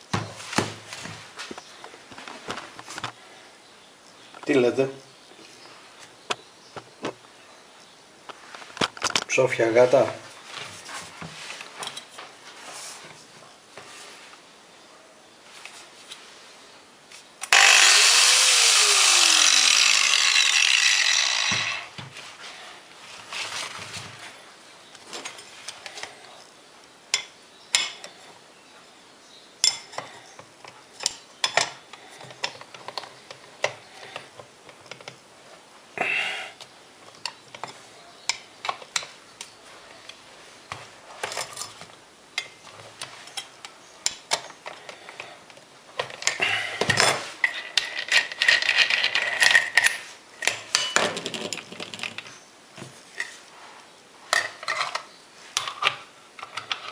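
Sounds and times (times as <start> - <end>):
metal tool parts clinking: 47.0 - 52.2.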